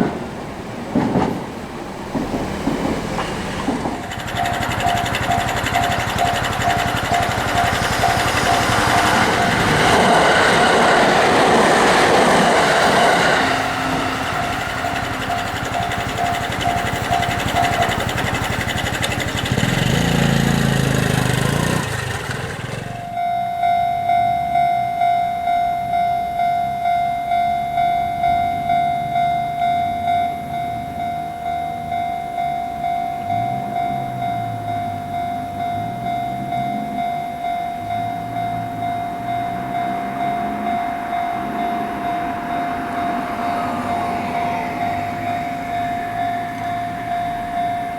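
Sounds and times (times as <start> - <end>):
train passing loudly: 0.0 - 47.9
level crossing bell ringing: 4.0 - 22.4, 23.0 - 47.9.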